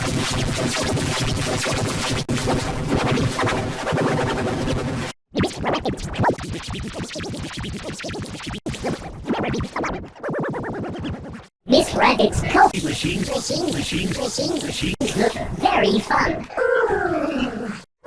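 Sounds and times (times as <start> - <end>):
record scratch effects: 0.0 - 16.5
electronic remix music: 11.7 - 16.2.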